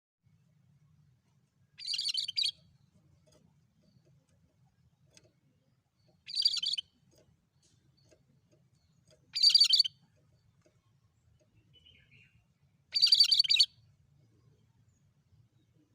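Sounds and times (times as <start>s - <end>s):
songbird singing high notes: 1.8s - 2.5s, 9.4s - 9.9s, 13.0s - 13.7s.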